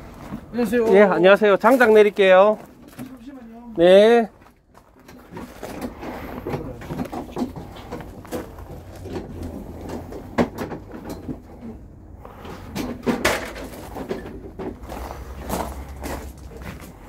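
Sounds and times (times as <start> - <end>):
knocks of things handled: 4.9 - 11.8, 12.4 - 15.0.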